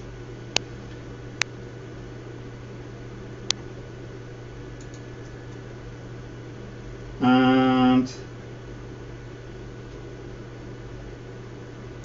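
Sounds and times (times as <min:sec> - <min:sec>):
steady low hum: 0:00.0 - 0:12.0
computer mouse clicks: 0:04.8 - 0:05.6.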